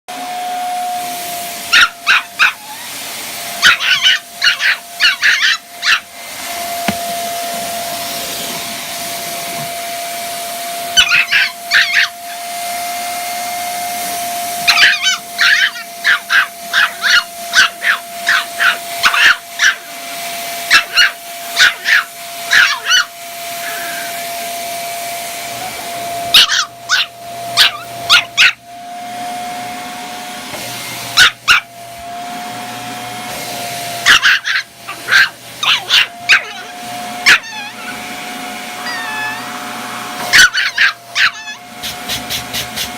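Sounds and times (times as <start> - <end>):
vacuum cleaner running: 0.1 - 42.9
puppy barking: 1.7 - 2.9, 3.5 - 7.4, 10.9 - 12.5, 14.6 - 20.0, 20.6 - 24.2, 26.3 - 28.6, 31.1 - 31.7, 34.0 - 42.9.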